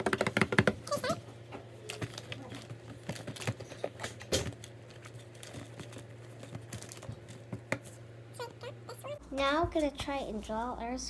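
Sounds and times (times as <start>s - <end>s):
toys clicking and tapping: 0.0s - 1.1s
steady low hum: 0.0s - 11.0s.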